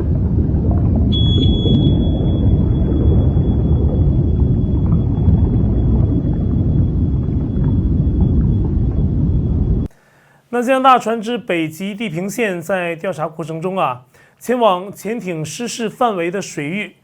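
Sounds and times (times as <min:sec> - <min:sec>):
low underwater rumble: 0:00.0 - 0:09.9
thin high steady tone: 0:01.1 - 0:09.9.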